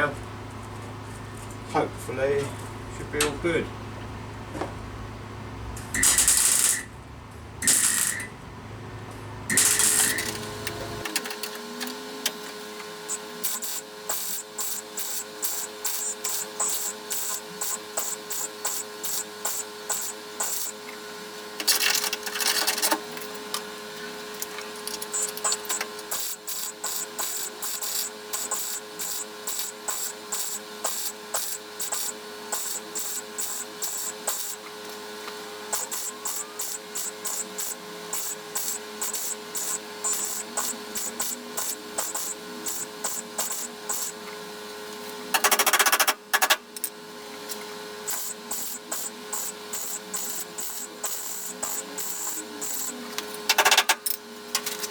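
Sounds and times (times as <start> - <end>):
steady hum: 0.0 - 35.0
welder arc crackling: 6.0 - 7.0, 7.6 - 8.3, 9.5 - 11.4.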